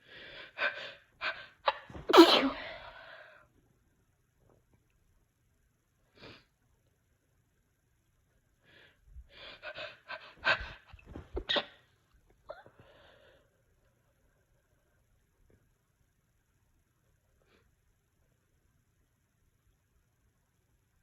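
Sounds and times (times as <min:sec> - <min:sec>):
person sneezing: 0:01.7 - 0:03.0.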